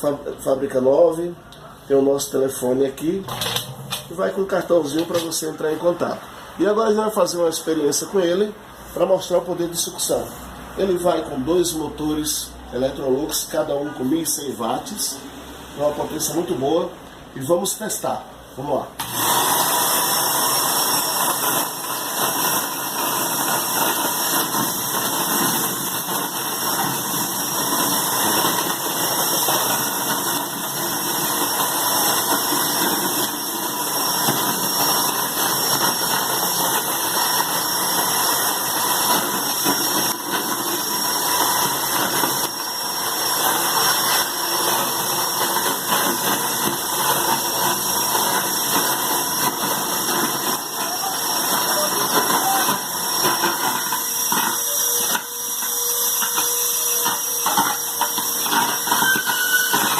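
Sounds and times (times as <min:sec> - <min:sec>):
vacuum cleaner running: 0:19.0 - 0:59.9.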